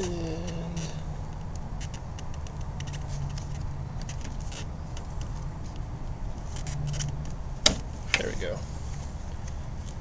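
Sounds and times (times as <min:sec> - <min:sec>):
steady low hum: 0:00.0 - 0:01.7.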